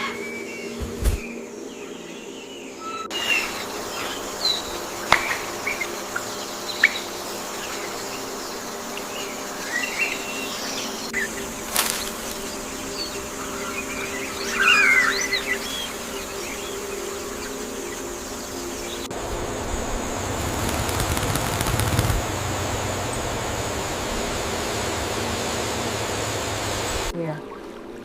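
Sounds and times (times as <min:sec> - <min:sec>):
low buzzing hum: 0:18.8 - 0:27.1
sharp clicks: 0:20.4 - 0:22.3.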